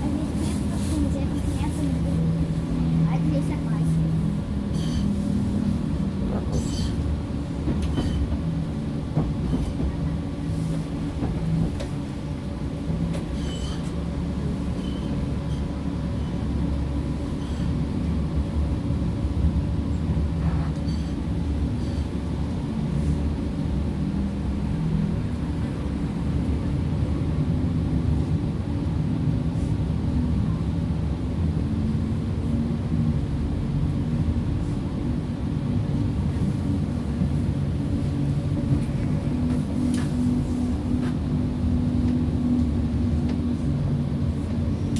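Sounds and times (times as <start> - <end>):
tram running rumble: 0.0 - 44.9.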